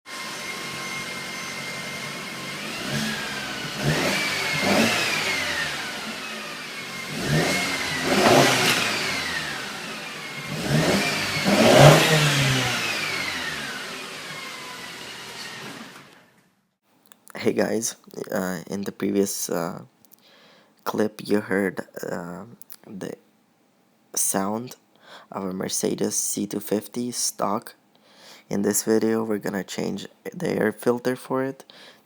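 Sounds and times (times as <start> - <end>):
car engine idling and revving: 0.1 - 16.2.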